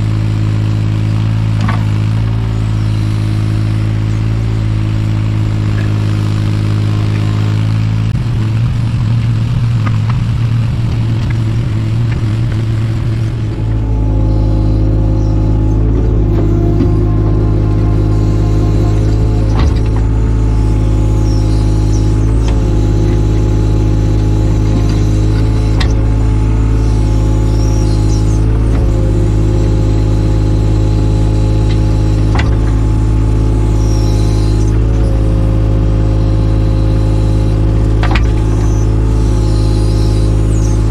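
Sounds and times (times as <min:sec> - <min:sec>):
excavator diesel engine: 0:00.0 - 0:40.9
sharp machine knocks: 0:13.4 - 0:33.2.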